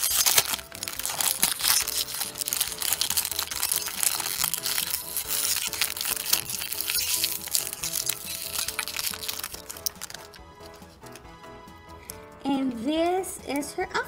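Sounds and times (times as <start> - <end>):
plastic packaging crinkling: 0.0 - 11.3
background music: 0.0 - 14.0.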